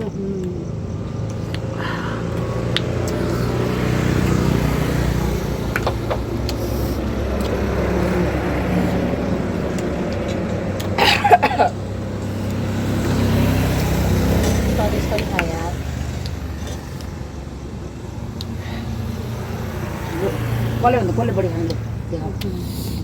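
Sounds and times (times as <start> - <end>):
vehicle engine humming: 0.0 - 23.0.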